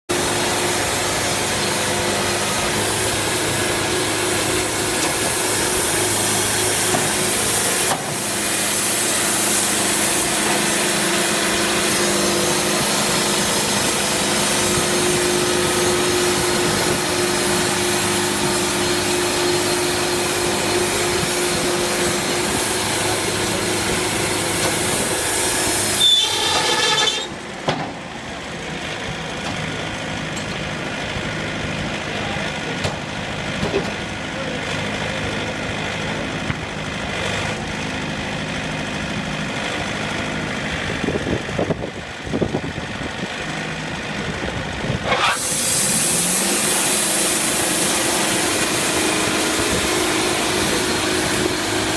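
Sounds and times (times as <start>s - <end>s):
saw blade cutting through log: 0.1s - 27.3s, 45.0s - 51.9s
sawmill engine running: 0.1s - 51.9s
saw blade squeal: 0.3s - 23.4s, 24.2s - 27.4s, 45.1s - 51.9s.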